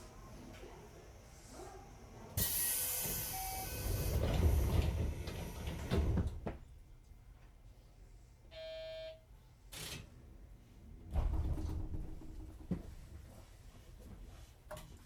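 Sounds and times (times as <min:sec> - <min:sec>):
train doors closing: 0:02.4 - 0:06.7.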